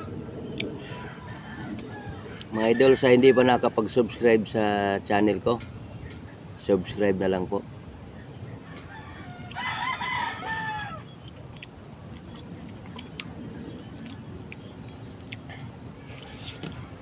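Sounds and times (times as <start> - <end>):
rooster crowing: 0.9 - 4.0, 8.6 - 11.1.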